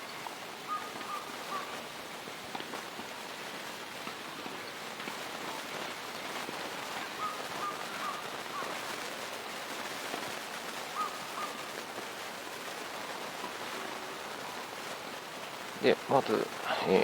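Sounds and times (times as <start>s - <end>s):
bird calling: 0.7s - 1.8s, 7.2s - 8.8s, 11.0s - 11.7s
wind hissing: 6.6s - 17.0s.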